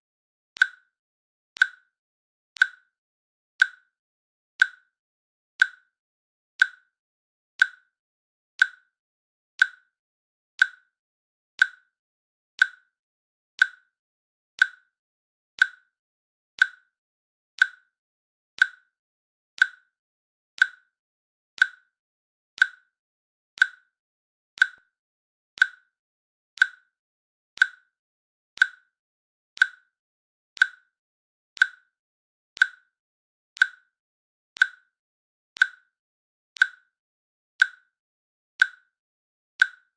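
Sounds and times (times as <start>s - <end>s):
timer clicks: 0.6s - 1.0s, 1.6s - 2.0s, 2.6s - 3.0s, 3.6s - 3.9s, 4.6s - 5.0s, 5.6s - 6.0s, 6.6s - 7.0s, 7.6s - 7.9s, 8.6s - 9.0s, 9.6s - 10.0s, 10.6s - 11.0s, 11.6s - 12.0s, 12.6s - 13.0s, 13.6s - 14.0s, 14.6s - 15.0s, 15.6s - 16.0s, 16.6s - 17.0s, 17.6s - 18.0s, 18.6s - 19.0s, 19.6s - 20.0s, 20.6s - 21.0s, 21.6s - 22.0s, 22.6s - 23.0s, 23.6s - 24.0s, 24.6s - 25.0s, 25.6s - 26.0s, 26.6s - 27.0s, 27.6s - 28.0s, 28.6s - 29.0s, 29.6s - 30.0s, 30.6s - 31.0s, 31.6s - 32.0s, 32.6s - 33.0s, 33.6s - 34.0s, 34.6s - 35.0s, 35.6s - 36.0s, 36.6s - 37.0s, 37.6s - 38.0s, 38.6s - 39.0s, 39.6s - 39.9s.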